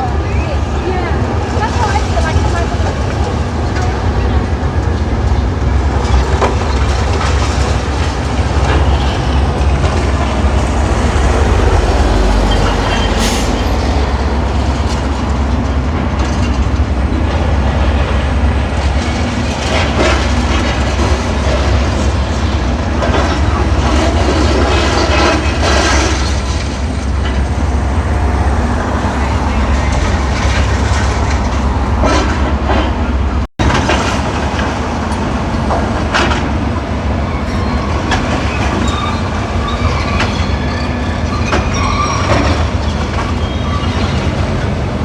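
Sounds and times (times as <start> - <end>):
demolition machinery rumbling: 5.4 - 33.5.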